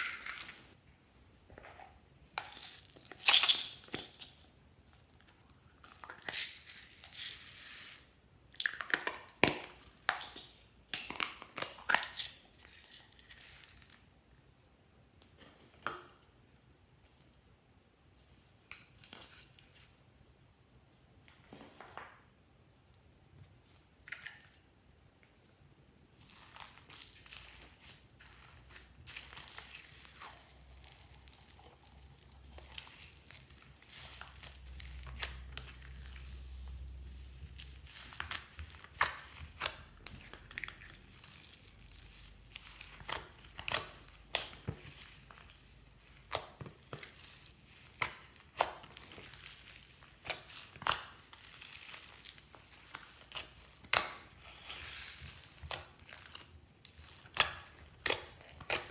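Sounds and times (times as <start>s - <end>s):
slime squished by hand: 26.2s - 58.9s.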